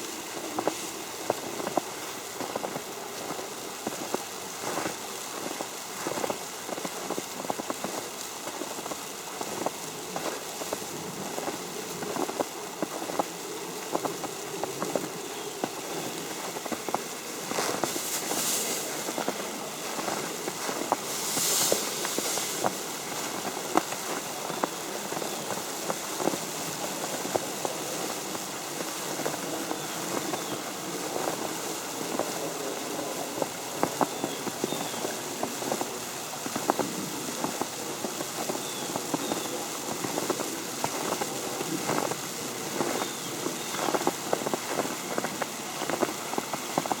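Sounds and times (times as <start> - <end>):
snow pattering on umbrella: 0.0 - 47.0
hissing swishes: 17.4 - 23.1.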